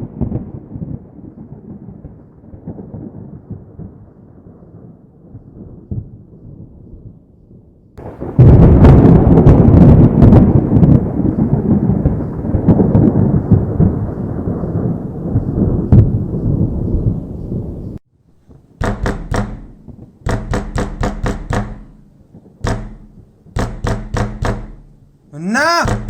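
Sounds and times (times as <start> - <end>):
thunder rumbling: 8.0 - 18.7
percussive beats over bass: 18.8 - 26.0.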